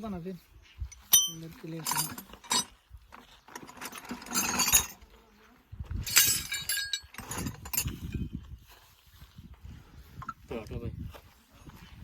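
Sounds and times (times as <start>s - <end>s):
metal tools clinking and scraping: 0.9s - 5.1s, 6.0s - 8.3s.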